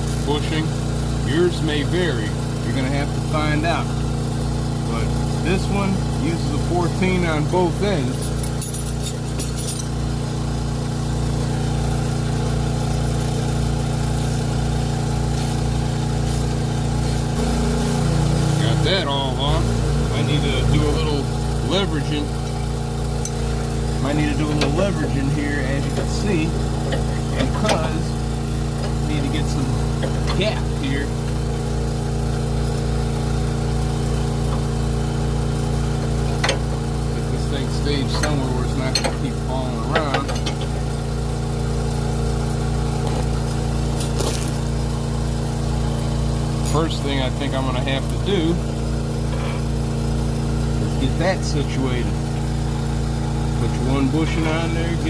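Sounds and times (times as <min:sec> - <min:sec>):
engine droning: 0:00.0 - 0:55.0.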